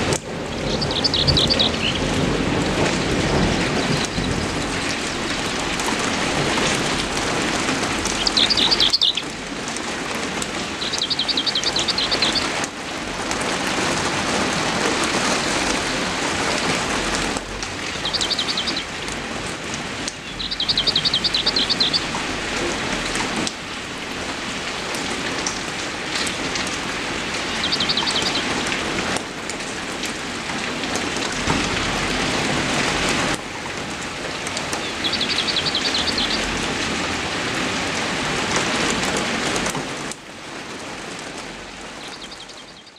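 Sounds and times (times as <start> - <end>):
heavy rain falling: 0.0 - 42.9
bird trilling: 0.5 - 2.2, 8.1 - 9.2, 10.8 - 12.5, 17.9 - 18.9, 20.2 - 22.1, 27.4 - 28.7, 34.8 - 36.4.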